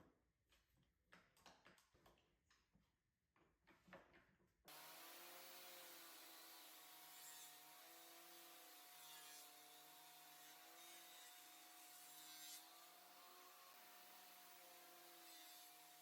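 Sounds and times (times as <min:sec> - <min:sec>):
table saw cutting wood: 0:04.7 - 0:16.0.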